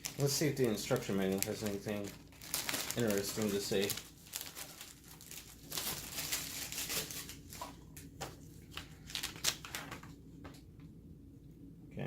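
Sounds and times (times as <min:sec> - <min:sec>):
paper pages rustling: 0:00.0 - 0:10.2.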